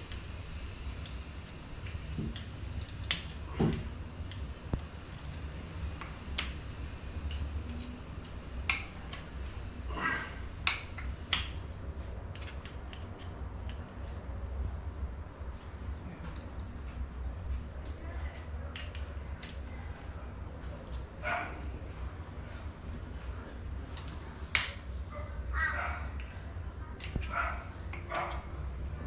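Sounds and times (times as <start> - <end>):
low background hum: 0.0 - 29.0
metal tools clicking and knocking: 12.3 - 14.1.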